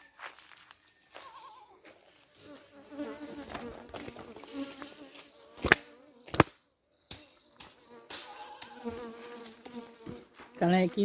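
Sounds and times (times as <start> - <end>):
bees buzzing: 2.4 - 6.5, 7.6 - 11.0.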